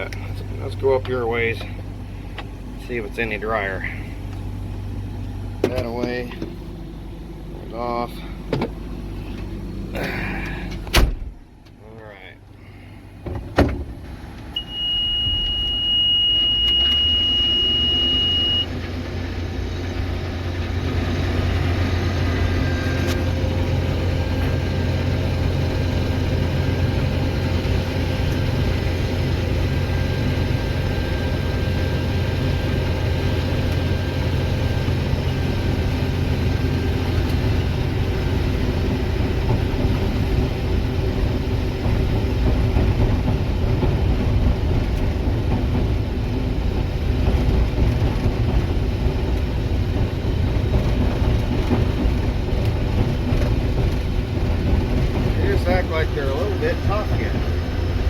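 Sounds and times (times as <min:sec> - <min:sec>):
combine harvester engine and threshing: 0:00.0 - 0:58.0
steady high beep: 0:14.6 - 0:18.7.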